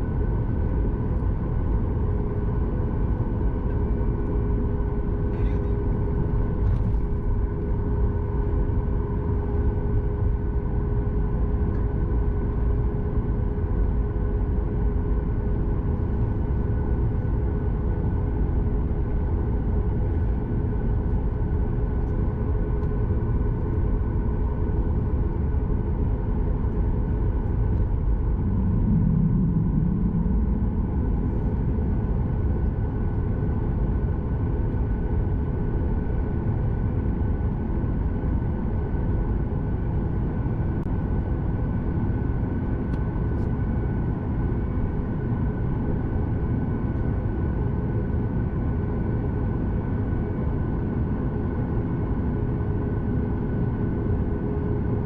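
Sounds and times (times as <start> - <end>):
airplane cabin deep rumble: 0.0 - 55.0
engine whining tones: 27.8 - 32.5.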